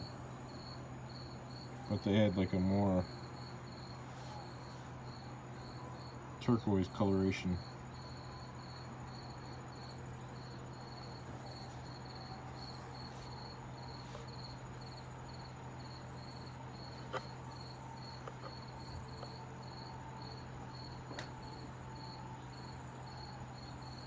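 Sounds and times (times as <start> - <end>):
insect chirping: 0.0 - 6.2, 7.6 - 24.0
low steady hum: 0.0 - 24.0.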